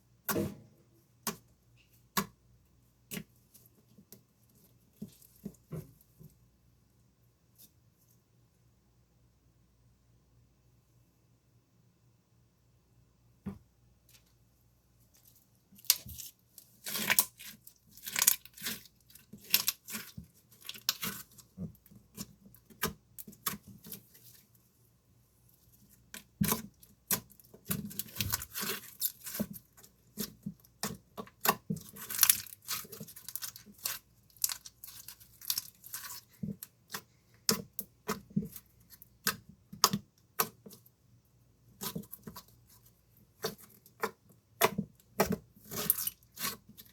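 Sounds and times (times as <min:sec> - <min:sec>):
slime clicking and crackling: 0:26.4 - 0:40.6.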